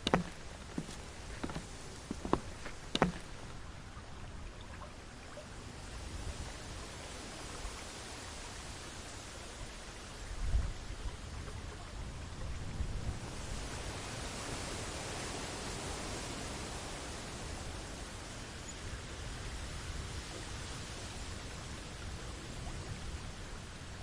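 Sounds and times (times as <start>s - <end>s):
wind on microphone: 5.6s - 24.0s.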